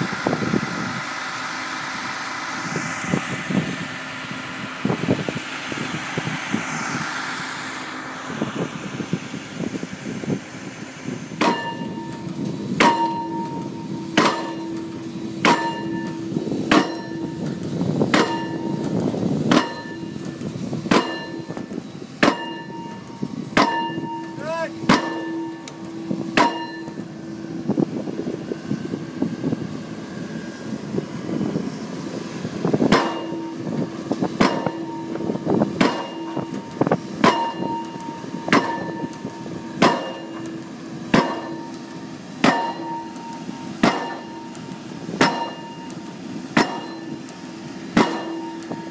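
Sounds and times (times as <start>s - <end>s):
steady machine hum: 0.0s - 48.9s
pile-driving hammer clanging: 11.4s - 27.1s, 32.8s - 48.9s.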